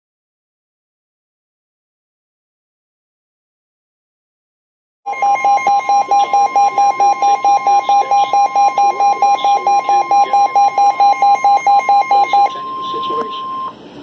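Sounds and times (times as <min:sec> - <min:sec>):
fast pulsing beeps: 0:05.1 - 0:13.8
steady high alarm tone: 0:05.1 - 0:13.8.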